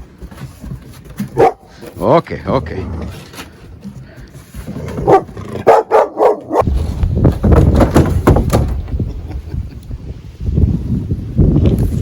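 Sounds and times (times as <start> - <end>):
dog yipping: 1.4 - 1.6, 5.1 - 6.6.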